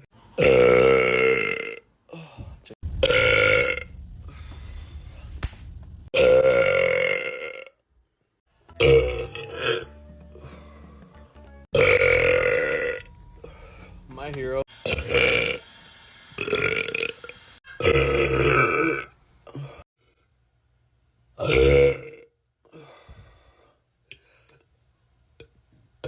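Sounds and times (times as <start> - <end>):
men burping: 0.4 - 1.8, 6.1 - 7.7, 8.8 - 9.8, 11.8 - 13.1.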